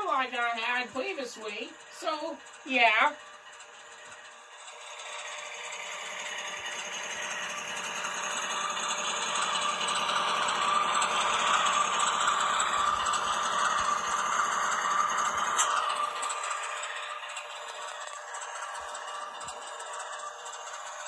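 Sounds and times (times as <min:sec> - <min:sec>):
model train motor whine: 0:00.0 - 0:21.0
wheels rattling on rails: 0:00.0 - 0:21.0.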